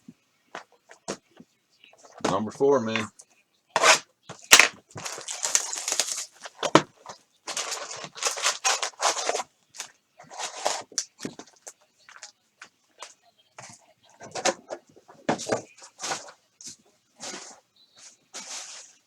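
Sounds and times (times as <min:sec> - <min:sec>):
plastic wrapping crinkling and tearing: 0:03.8 - 0:06.9, 0:07.5 - 0:12.3.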